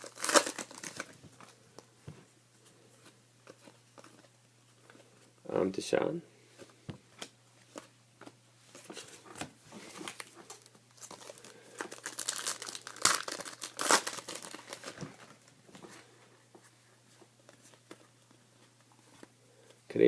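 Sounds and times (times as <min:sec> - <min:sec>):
wrapper crinkling and tearing: 0:00.0 - 0:01.2, 0:10.0 - 0:15.5.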